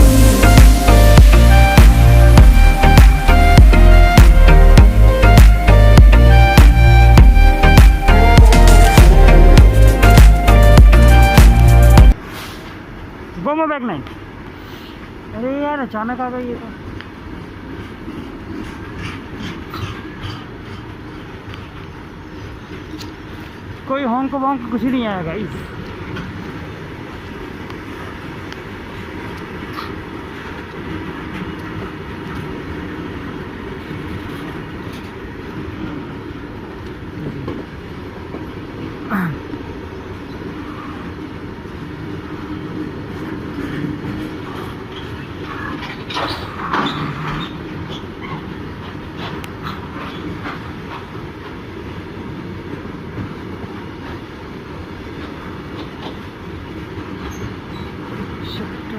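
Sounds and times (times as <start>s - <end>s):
freight train rolling past: 0.0s - 58.9s.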